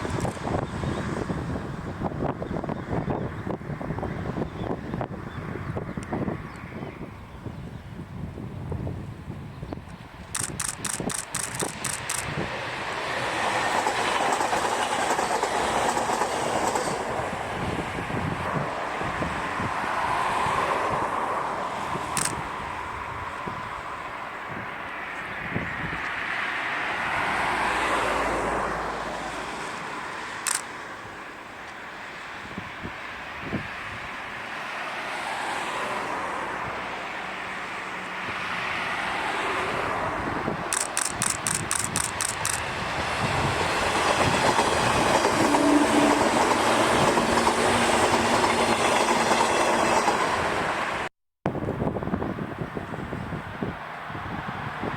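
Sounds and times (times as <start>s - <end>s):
train wheel and rail noise: 0.0s - 54.9s
sharp clicks: 0.1s - 0.4s, 9.9s - 12.4s, 22.2s - 22.4s, 30.4s - 30.7s, 40.7s - 42.7s
electric train running noise: 10.3s - 18.4s, 39.2s - 51.0s.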